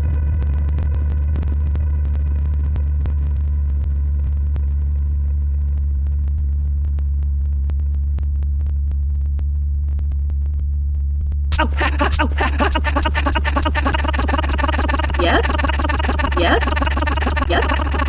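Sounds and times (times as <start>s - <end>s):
loud low hum: 11.5s - 18.0s.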